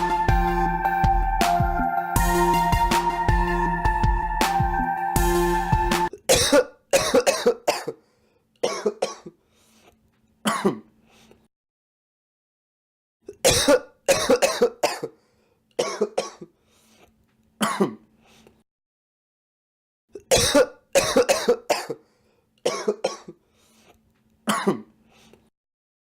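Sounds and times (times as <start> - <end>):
man coughing: 6.1 - 8.0, 8.6 - 9.4, 10.4 - 10.9, 13.3 - 15.2, 15.8 - 16.5, 17.6 - 18.0, 20.2 - 22.0, 22.7 - 23.4, 24.5 - 24.9.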